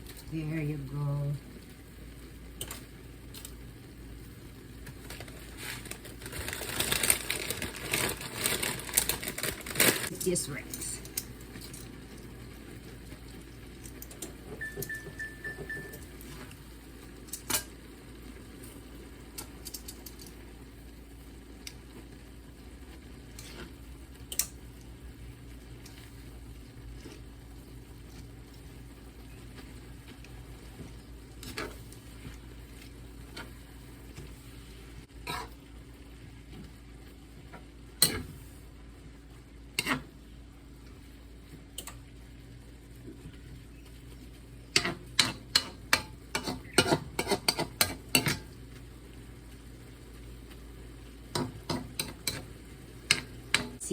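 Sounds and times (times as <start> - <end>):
utensil knocking and scraping a pan: 44.7 - 48.5.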